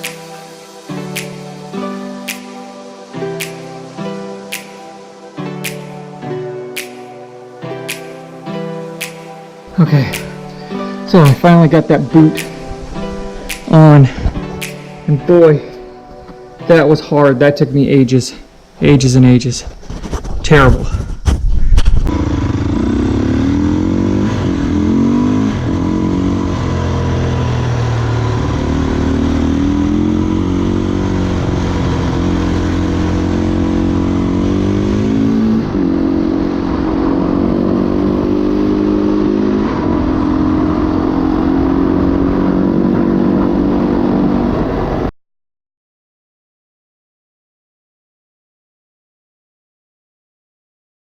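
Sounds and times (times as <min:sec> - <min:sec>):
motorcycle engine running: 0:21.9 - 0:43.9.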